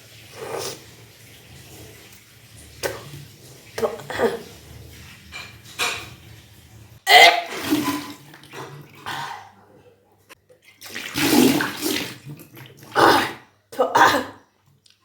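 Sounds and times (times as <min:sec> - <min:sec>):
person retching: 0:07.1 - 0:09.2, 0:11.2 - 0:13.4
water splashing out: 0:10.6 - 0:13.4.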